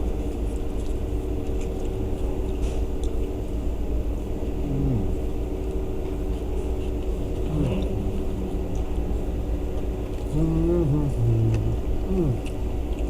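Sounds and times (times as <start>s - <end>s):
person humming mmm: 4.5s - 5.4s, 7.3s - 9.2s, 9.8s - 12.6s.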